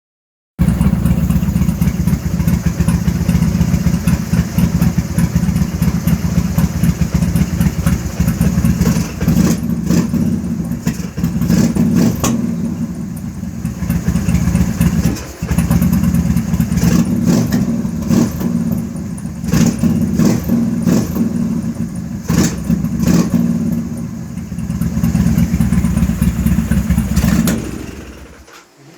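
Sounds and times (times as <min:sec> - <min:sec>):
engine idling roughly: 0:00.6 - 0:28.5.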